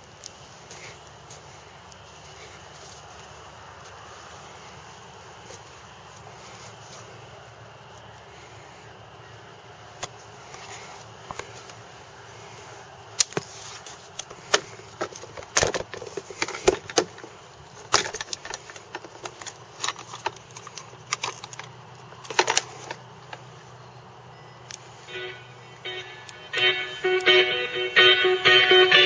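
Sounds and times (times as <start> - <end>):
faint steady hum: 0.0 - 29.0
sharp clicks and knocks: 14.2 - 23.4.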